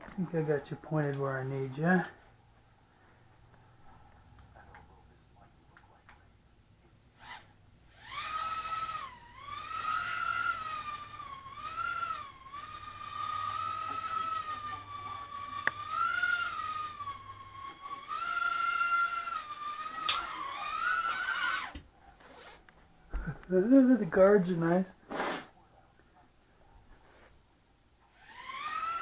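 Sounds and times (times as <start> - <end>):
quadcopter motors whining: 7.1 - 22.6, 28.0 - 29.0.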